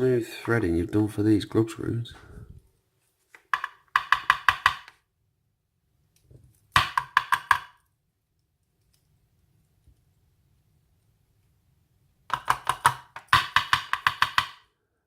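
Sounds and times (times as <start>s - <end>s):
lock cylinder tapping metallic knocks: 3.4s - 5.0s, 6.7s - 7.8s, 12.3s - 14.7s.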